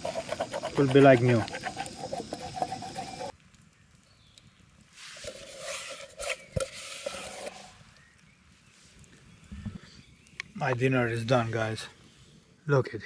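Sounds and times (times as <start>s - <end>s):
stick scraping metal pan: 0.0s - 3.3s, 5.1s - 7.8s
water boiling: 0.0s - 3.4s
sizzling: 0.0s - 9.4s.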